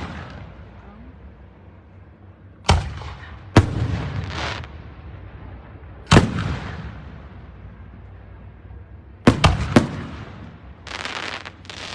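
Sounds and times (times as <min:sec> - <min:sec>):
fireworks booming: 0:00.0 - 0:00.8, 0:02.7 - 0:07.7, 0:09.2 - 0:11.9
rolling echo: 0:00.0 - 0:11.9
fireworks hissing crackle: 0:04.0 - 0:04.7, 0:10.8 - 0:11.9.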